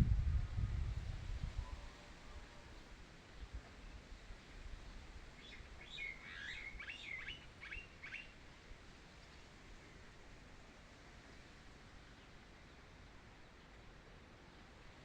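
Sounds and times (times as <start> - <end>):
faint low rumble: 0.0 - 1.1
songbird singing: 5.4 - 8.3.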